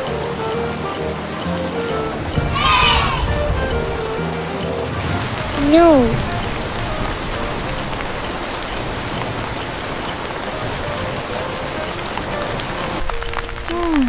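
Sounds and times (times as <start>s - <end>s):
steady rain falling: 0.0s - 14.0s
person calling no: 5.5s - 6.3s.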